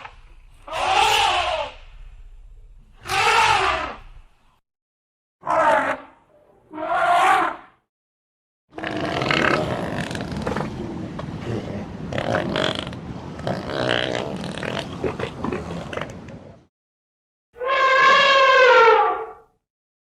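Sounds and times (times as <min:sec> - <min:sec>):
elephant rumbling and grunting: 0:08.7 - 0:16.7.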